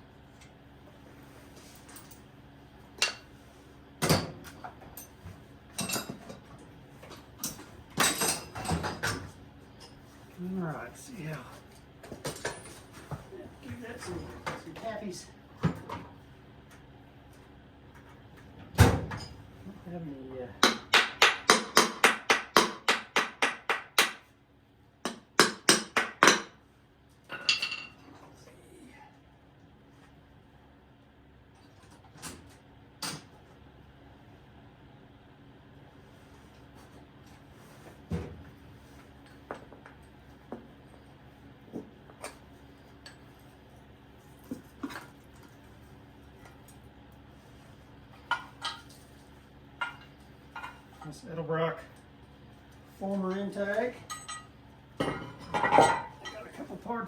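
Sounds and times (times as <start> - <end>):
hammer striking metal: 20.6 - 24.2
hand tools clanking on metal: 53.1 - 56.8.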